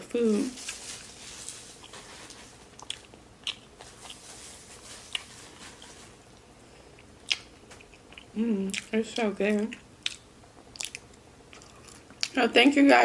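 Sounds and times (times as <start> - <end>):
person chewing food: 1.5 - 8.9, 9.7 - 12.4.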